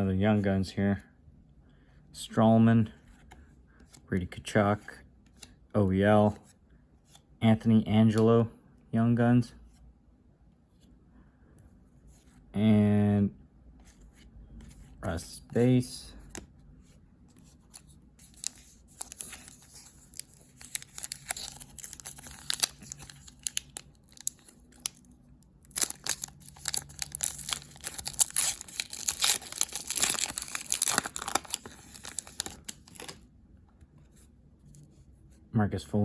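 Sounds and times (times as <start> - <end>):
cards rustling: 13.8 - 33.3
card pack wrapper crinkling: 17.7 - 33.2.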